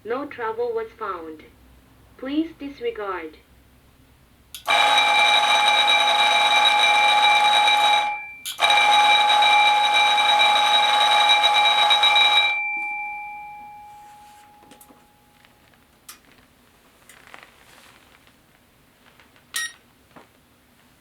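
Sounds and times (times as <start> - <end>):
electric fire alarm bell ringing: 4.6 - 15.4, 19.6 - 19.8.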